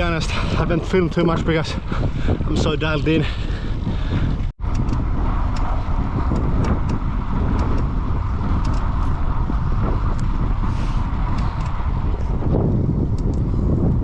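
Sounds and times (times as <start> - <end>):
wind and road noise: 0.0 - 14.0
faint clicks: 13.1 - 13.4.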